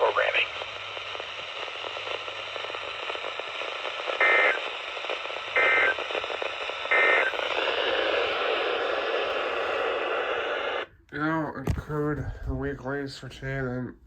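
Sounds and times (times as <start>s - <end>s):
radio static: 0.0s - 10.9s.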